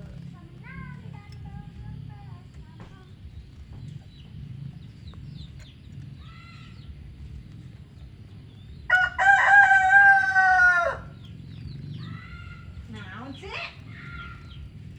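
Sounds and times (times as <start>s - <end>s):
small birds chirping: 0.0s - 14.9s
rooster crowing: 8.9s - 11.2s.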